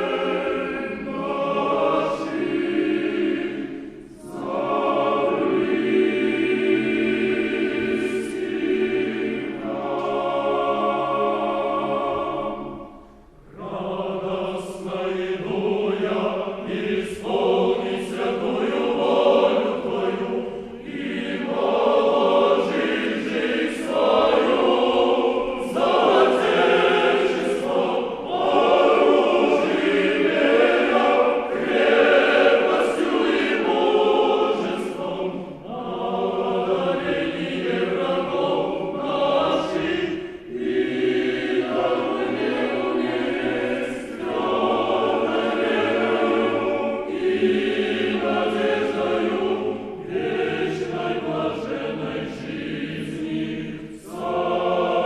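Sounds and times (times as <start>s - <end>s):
mixed choir singing: 0.0s - 55.0s.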